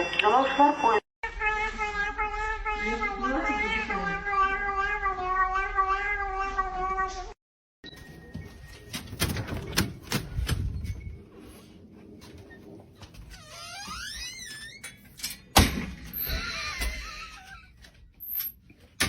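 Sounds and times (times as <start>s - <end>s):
cat meowing: 1.2s - 7.4s.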